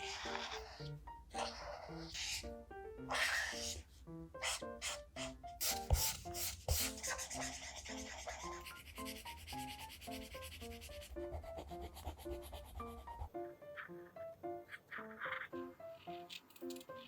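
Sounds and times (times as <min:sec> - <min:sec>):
light plucked background melody: 0:00.0 - 0:17.0
paper rubbing against paper: 0:04.4 - 0:13.3.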